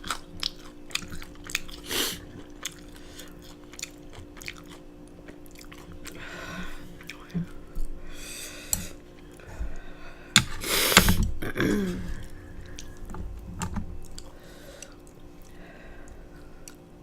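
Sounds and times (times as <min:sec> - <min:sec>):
mouth clicks and chewing: 0:00.0 - 0:06.2.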